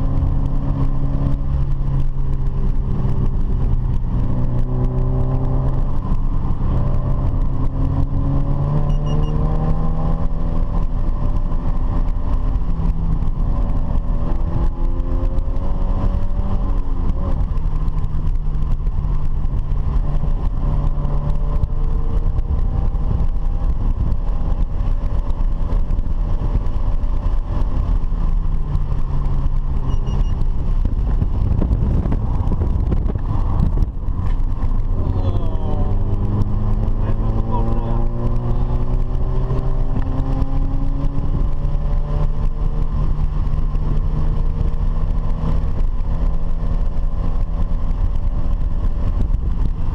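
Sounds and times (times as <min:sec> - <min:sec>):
car engine accelerating: 0:00.0 - 0:49.9
road and wind noise: 0:00.0 - 0:49.9.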